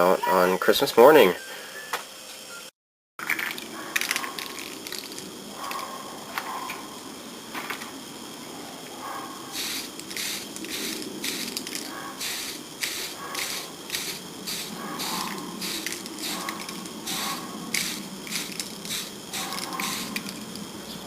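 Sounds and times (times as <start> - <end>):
spray can rattling: 3.2 - 5.3, 9.5 - 20.7
aerosol spray can hissing: 9.5 - 20.7.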